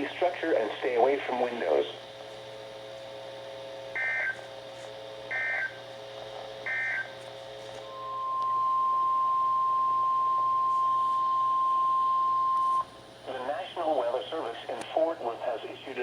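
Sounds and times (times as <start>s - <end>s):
steady single-pitch alert tone: 7.9s - 12.9s.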